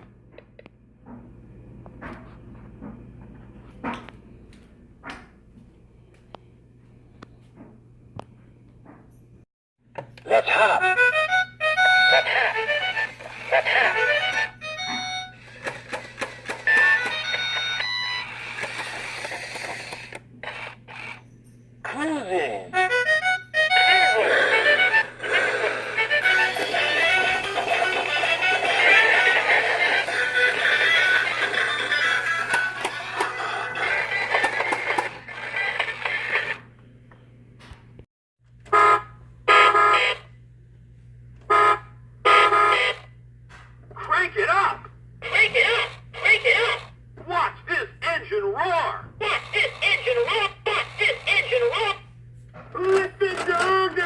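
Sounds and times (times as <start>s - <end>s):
electronic music from toy speaker: 10.5s - 20.0s, 22.8s - 36.6s, 49.2s - 52.0s
toy mechanical clicks: 15.4s - 21.2s.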